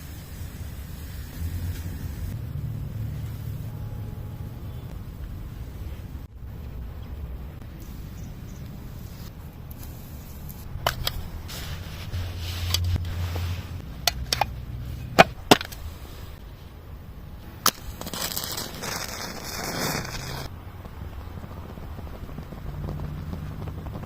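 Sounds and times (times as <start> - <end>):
hiss: 0.0 - 2.4, 17.8 - 20.5.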